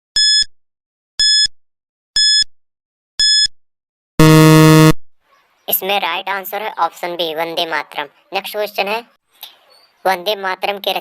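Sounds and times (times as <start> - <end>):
low timer buzz: 4.2 - 5.0
short high beeps: 4.2 - 5.0.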